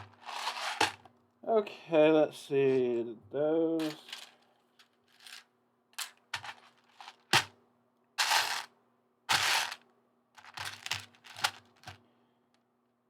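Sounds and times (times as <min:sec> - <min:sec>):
plastic bricks clicking and rattling: 0:08.2 - 0:08.7, 0:09.3 - 0:09.8, 0:10.4 - 0:12.0.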